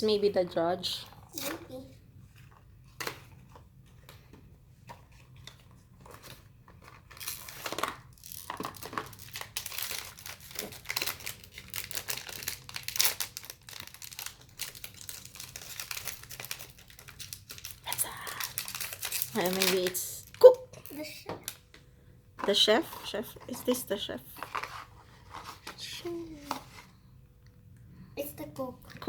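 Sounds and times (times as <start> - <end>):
packaging crinkling and tearing: 4.9 - 21.8.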